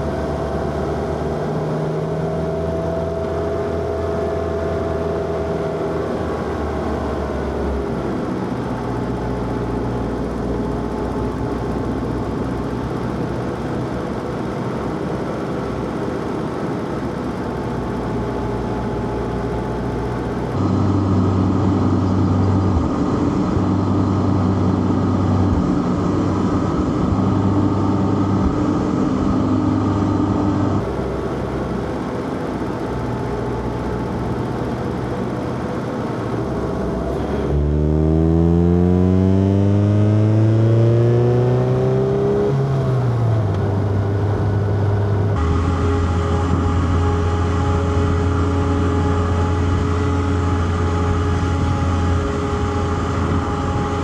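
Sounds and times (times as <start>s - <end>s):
car engine revving: 17.2s - 54.0s.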